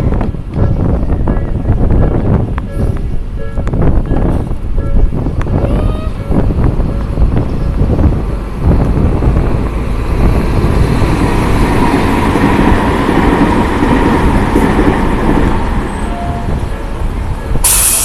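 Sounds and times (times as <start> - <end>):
train wheels rumbling on rails: 0.0 - 18.0
short burst of hiss: 17.6 - 18.0.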